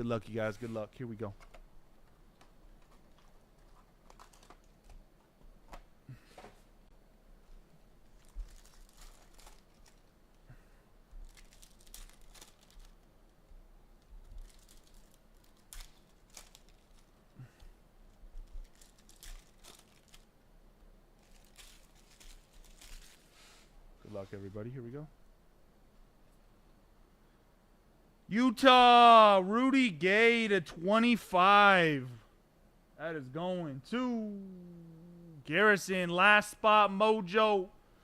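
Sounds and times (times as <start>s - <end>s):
wrappers tearing and crinkling: 4.0s - 4.9s, 8.1s - 10.2s, 11.2s - 13.1s, 14.2s - 17.4s, 18.5s - 20.3s, 21.2s - 23.4s.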